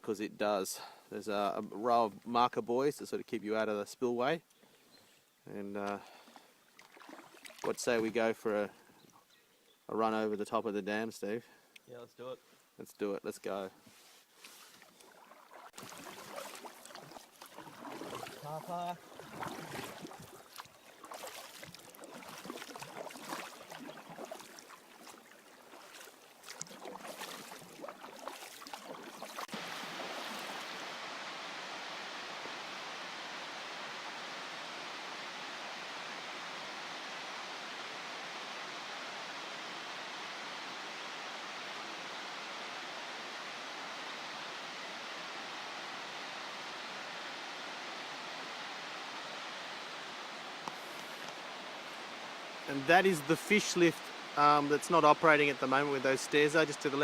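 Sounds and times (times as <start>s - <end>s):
water rushing: 14.5s - 57.0s
knocks and splashes: 15.0s - 30.8s.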